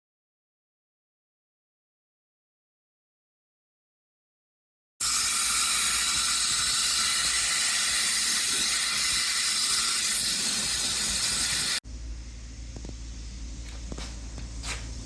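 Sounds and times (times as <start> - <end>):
loud steady hiss: 5.0 - 12.5.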